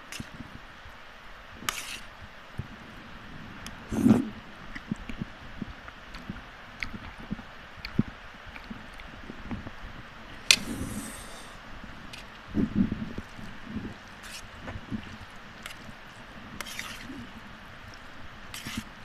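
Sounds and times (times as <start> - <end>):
short slurp: 3.9 - 4.3, 10.5 - 11.6
wet chewing: 6.1 - 9.2, 13.2 - 19.0.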